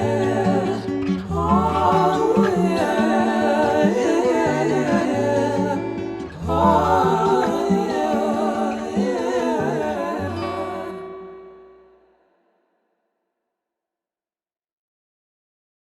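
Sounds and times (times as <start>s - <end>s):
gospel song with wordless vocals: 0.0s - 11.8s.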